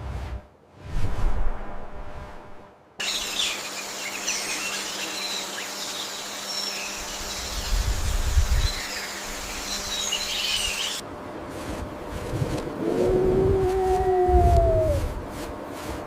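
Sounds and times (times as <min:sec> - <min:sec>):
low rumble: 0:00.0 - 0:02.9
bird chirps: 0:03.0 - 0:11.0
insects hissing: 0:03.0 - 0:11.0.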